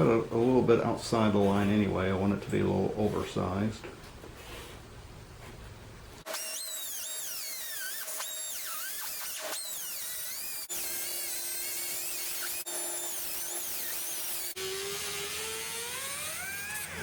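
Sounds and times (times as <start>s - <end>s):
power tool cutting sheet steel: 6.3s - 17.0s.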